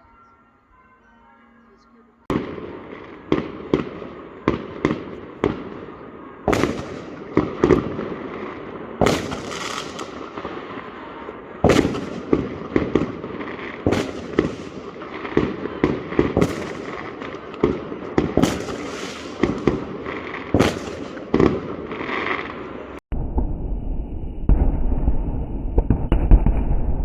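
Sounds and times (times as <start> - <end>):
fireworks bangs: 2.2 - 23.7, 24.4 - 27.0
fireworks crackling hiss: 6.5 - 22.9.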